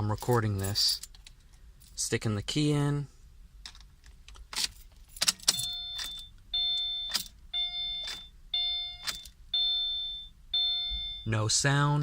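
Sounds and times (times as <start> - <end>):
key jingling in ignition: 0.0 - 2.1, 3.6 - 9.4
dashboard warning chime: 5.5 - 12.0.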